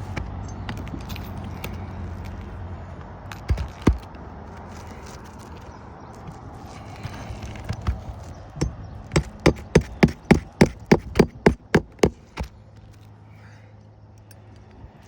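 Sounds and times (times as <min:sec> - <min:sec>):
hammer driving nails into shingle: 0:03.4 - 0:04.1, 0:07.4 - 0:12.6.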